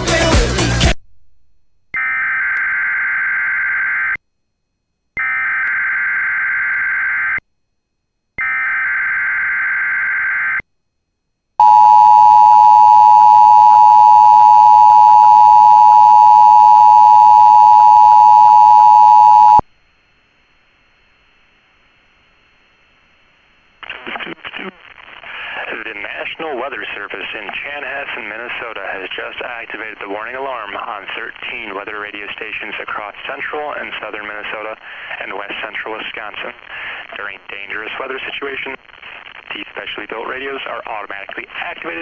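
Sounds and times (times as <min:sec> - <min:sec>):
warning alarm tone: 0:11.6 - 0:19.6.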